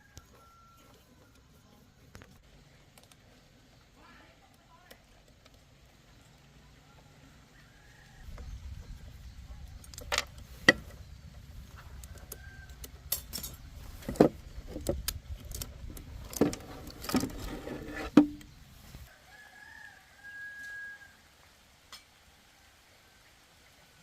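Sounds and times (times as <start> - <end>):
rooster crowing: 0.0 - 1.2, 7.4 - 8.3, 19.1 - 21.4
metallic clinks and knocks: 13.0 - 14.3.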